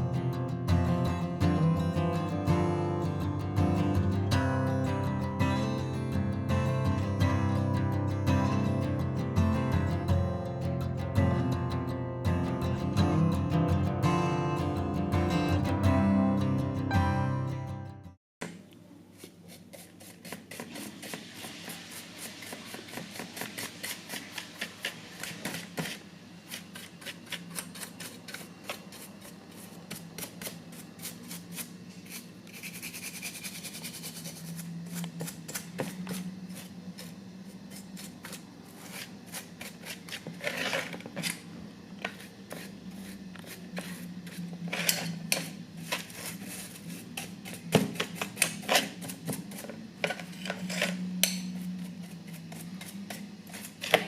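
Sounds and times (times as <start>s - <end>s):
hand tool scraping and clicking: 42.0s - 54.0s.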